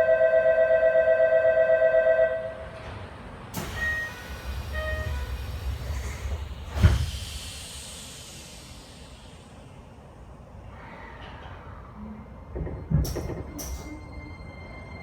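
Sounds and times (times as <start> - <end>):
train doors shutting thud: 2.7 - 9.4, 12.5 - 14.2.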